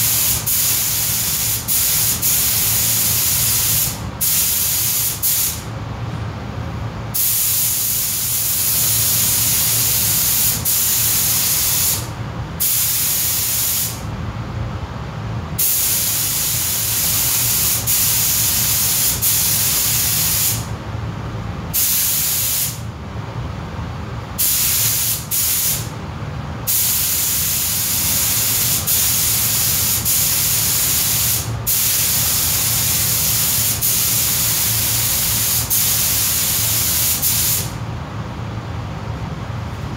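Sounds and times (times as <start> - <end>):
paint spray gun hissing: 0.0 - 5.6, 7.2 - 14.0, 15.6 - 20.7, 21.8 - 22.8, 24.4 - 25.9, 26.7 - 37.8
steady low hum: 0.0 - 39.9.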